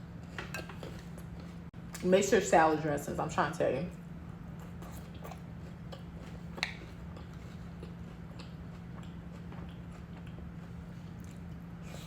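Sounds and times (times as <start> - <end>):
steady low hum: 0.0 - 12.0
person chewing salad: 4.4 - 12.0.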